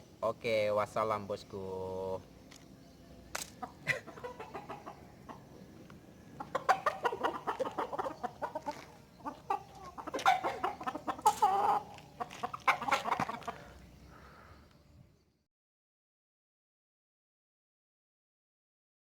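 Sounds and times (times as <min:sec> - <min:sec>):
chickens clucking: 0:01.8 - 0:15.0.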